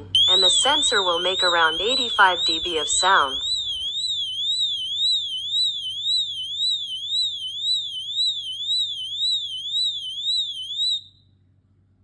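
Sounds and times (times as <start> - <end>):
high-pitched electronic alarm warble: 0.0 - 11.0.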